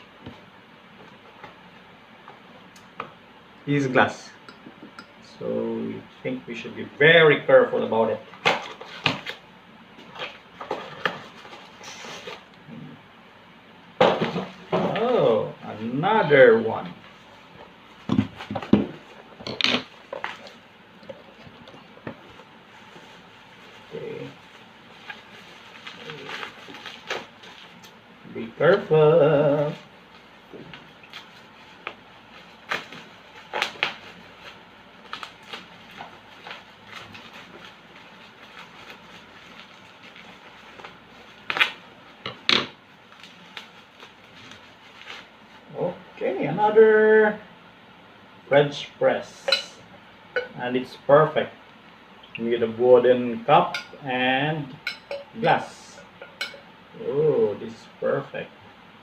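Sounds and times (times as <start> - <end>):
packaging rustling: 22.8 - 27.9, 31.1 - 41.9
glass coffee maker clinking: 49.4 - 50.6, 54.8 - 55.4, 56.0 - 56.7.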